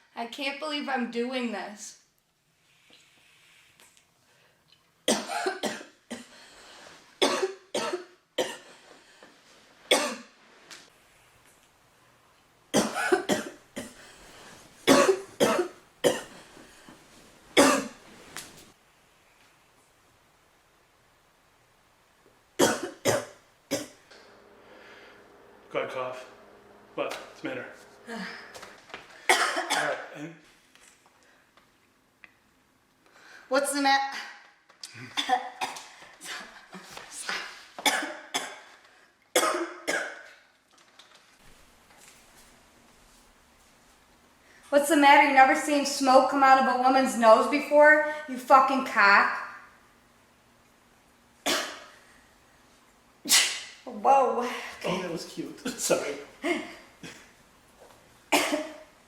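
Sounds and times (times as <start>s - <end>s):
woman coughing: 5.1s - 6.3s, 7.2s - 8.7s, 9.9s - 10.3s, 12.8s - 14.0s, 14.9s - 16.4s, 17.6s - 18.0s, 22.6s - 24.0s, 28.0s - 28.6s, 29.3s - 30.4s, 35.0s - 36.4s, 37.8s - 38.7s, 39.4s - 40.3s, 51.4s - 51.9s, 55.7s - 57.3s, 58.3s - 58.9s.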